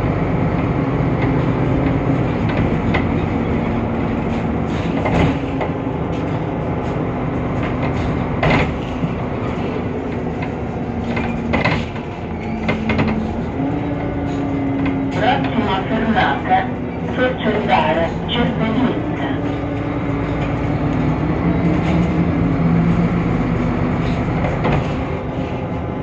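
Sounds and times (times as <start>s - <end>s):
bus engine drone: 0.0s - 26.0s
road rumble: 0.0s - 26.0s
rattles and knocks: 1.2s - 15.8s, 19.4s - 25.6s.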